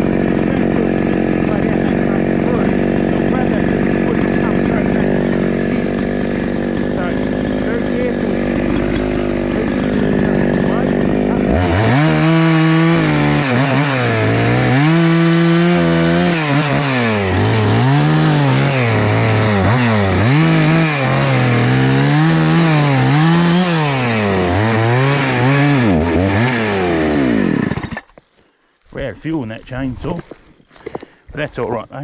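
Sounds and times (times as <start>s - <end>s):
chainsaw cutting wood: 0.0s - 28.2s.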